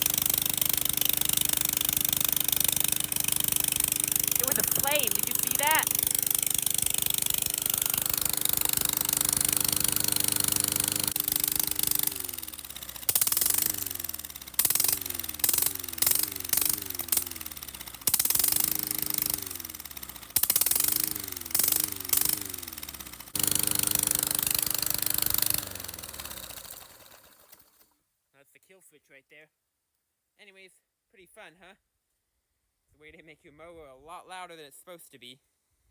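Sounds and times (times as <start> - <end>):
lawn mower engine revving: 0.0 - 27.8.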